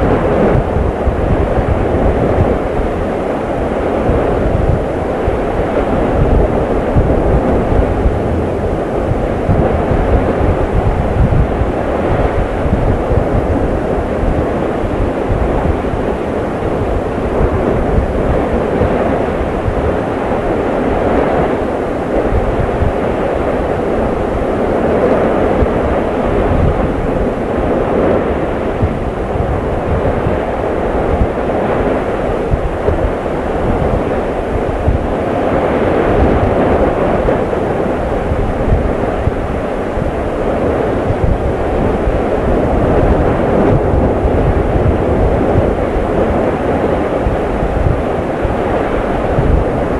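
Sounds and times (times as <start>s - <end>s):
loud low rumbling: 0.0s - 49.9s
volcanic eruption roar: 0.0s - 49.9s
low rumble: 21.6s - 35.4s.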